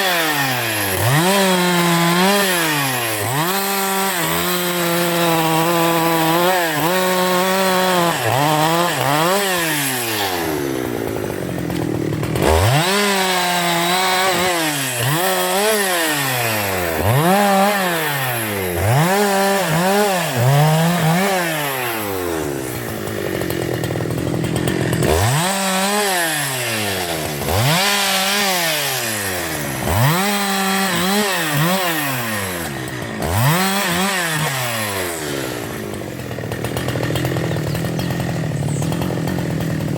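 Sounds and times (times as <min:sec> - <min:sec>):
chainsaw engine revving: 0:00.0 - 0:39.9.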